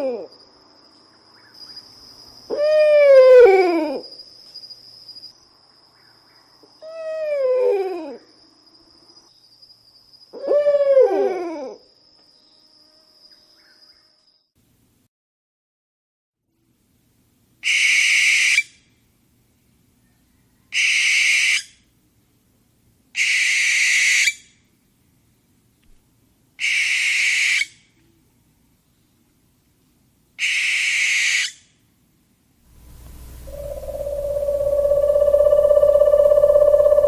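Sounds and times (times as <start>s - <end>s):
owl screeching: 20.7s - 21.7s, 32.8s - 37.0s
steady held tone: 32.7s - 37.0s.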